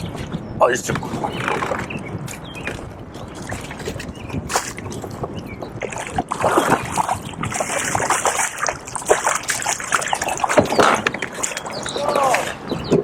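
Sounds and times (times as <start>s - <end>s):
water splashing and trickling: 0.0s - 13.0s.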